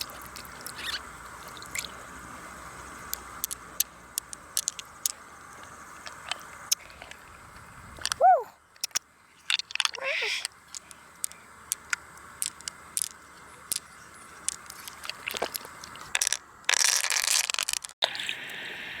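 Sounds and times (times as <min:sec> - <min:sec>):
steady hiss: 0:00.0 - 0:19.0
hard shells clicking and scraping: 0:03.1 - 0:07.3, 0:08.8 - 0:18.0.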